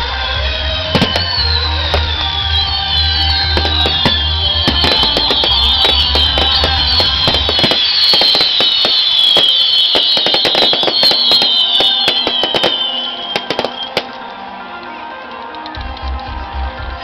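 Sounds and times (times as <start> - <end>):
fireworks whistles falling: 0.4 - 14.4
fireworks crackling: 0.8 - 14.5
fireworks pops: 1.0 - 2.4, 3.5 - 14.2.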